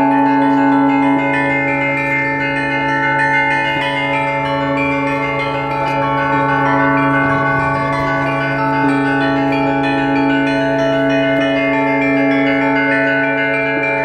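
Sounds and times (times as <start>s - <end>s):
large bells humming: 0.0s - 14.0s
small church bells ringing rapidly: 0.0s - 14.0s.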